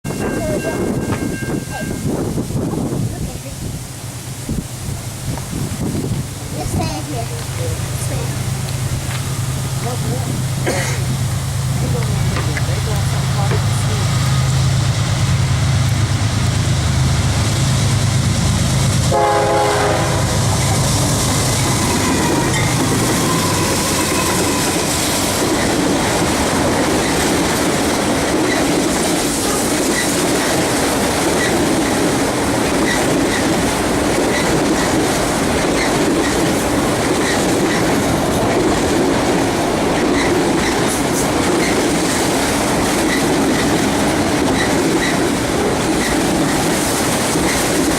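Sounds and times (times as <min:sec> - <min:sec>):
diesel locomotive drone: 0:00.0 - 0:47.9
freight cars rumbling past: 0:03.8 - 0:47.9
wheels clicking over rail joints: 0:05.2 - 0:16.3, 0:20.5 - 0:47.9
train horn tone falling in pitch: 0:19.1 - 0:25.2.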